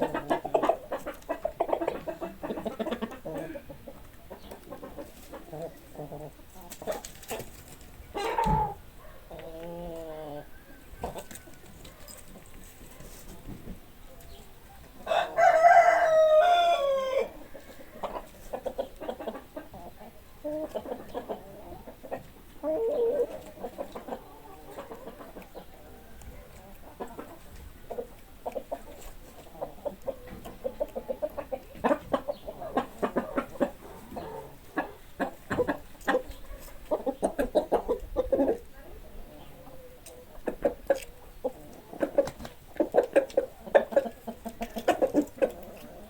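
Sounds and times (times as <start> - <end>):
hens clucking: 0.0 - 46.0
rooster crowing: 15.1 - 17.4.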